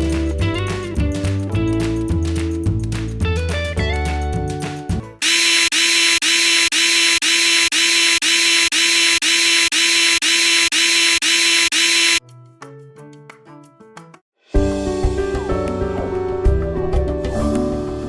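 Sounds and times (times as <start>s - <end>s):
background music: 0.0s - 5.2s, 12.2s - 18.0s
power tool whirring in pulses: 5.2s - 12.2s.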